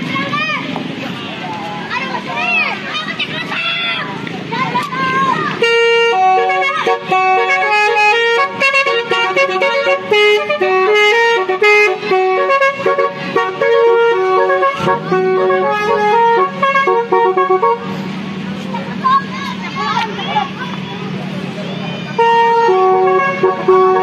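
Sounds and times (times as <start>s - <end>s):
multi-trumpet vehicle horn tune: 5.6s - 18.1s, 21.7s - 24.0s.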